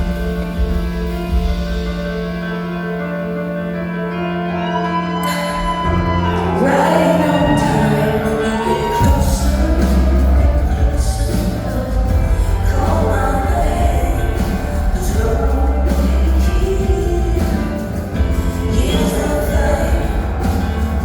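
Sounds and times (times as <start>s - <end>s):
held chords: 0.0s - 21.0s
heavy low bass: 5.2s - 21.0s
woman singing: 5.2s - 21.0s.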